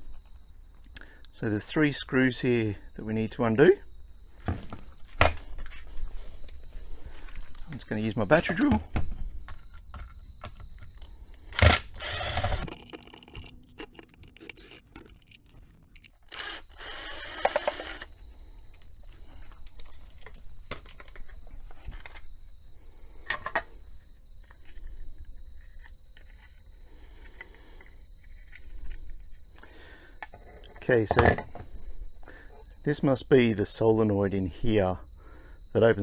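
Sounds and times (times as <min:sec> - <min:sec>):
handling plastic parts: 0:09.5 - 0:18.1
cordless drill running: 0:11.5 - 0:18.1.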